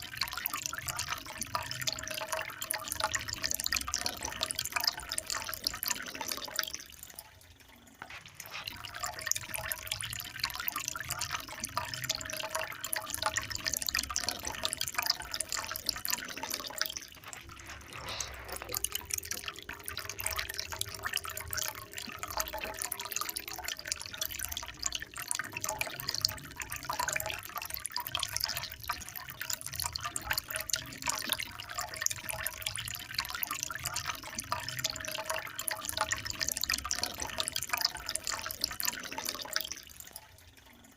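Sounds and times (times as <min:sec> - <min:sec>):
water trickling and splashing: 0:00.0 - 0:40.9.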